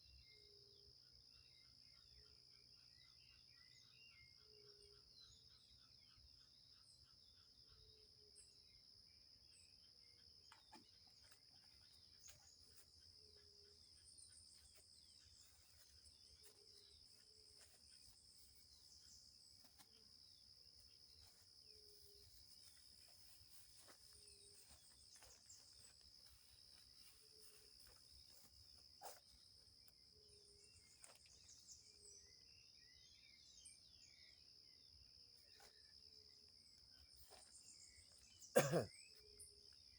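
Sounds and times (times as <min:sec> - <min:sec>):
crickets and insects trilling: 0:37.0 - 0:39.5.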